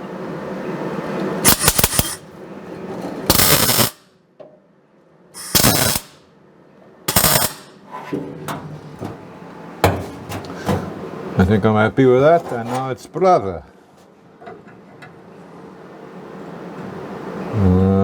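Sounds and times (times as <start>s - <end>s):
welding crackle: 1.4s - 2.2s, 3.3s - 4.0s, 5.4s - 6.2s, 7.1s - 7.8s.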